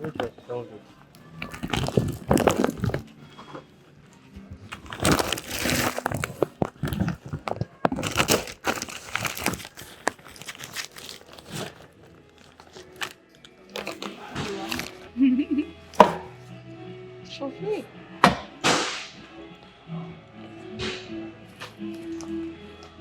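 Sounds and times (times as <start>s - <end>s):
rustling and crinkling: 0.0s - 15.2s.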